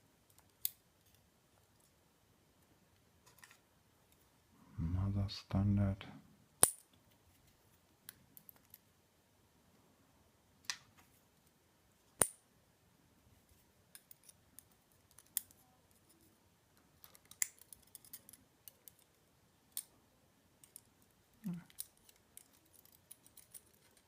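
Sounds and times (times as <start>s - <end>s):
small metallic clicks of lock pins: 21.7s - 24.0s.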